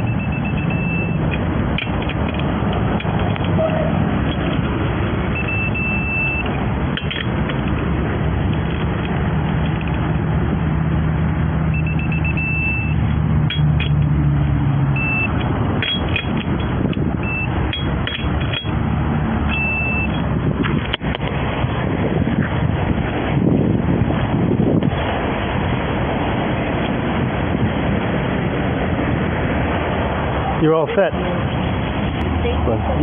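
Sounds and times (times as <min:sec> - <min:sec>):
electronic beeping: 0:00.0 - 0:01.3, 0:05.3 - 0:06.5, 0:11.7 - 0:13.0, 0:14.9 - 0:16.1, 0:17.2 - 0:17.9, 0:19.5 - 0:20.3
low vehicle rumble: 0:00.0 - 0:33.0
metallic clicks: 0:00.5 - 0:04.8, 0:13.0 - 0:14.2, 0:15.0 - 0:17.1, 0:17.7 - 0:18.8.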